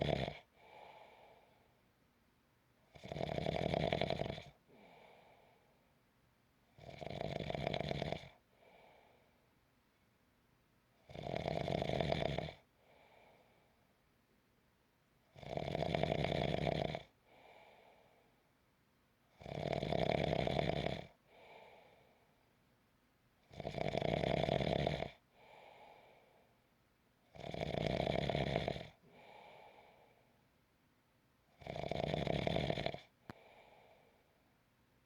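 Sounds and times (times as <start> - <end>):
loud snoring: 0.0 - 0.5, 2.9 - 4.6, 6.8 - 8.4, 11.0 - 12.7, 15.3 - 17.2, 19.4 - 21.2, 23.5 - 25.2, 27.3 - 29.4, 31.6 - 33.4
faint breathing: 0.0 - 1.9, 4.7 - 6.0, 8.5 - 9.5, 12.8 - 14.0, 17.2 - 18.5, 21.2 - 22.4, 25.3 - 26.7, 29.0 - 30.4, 33.2 - 34.5.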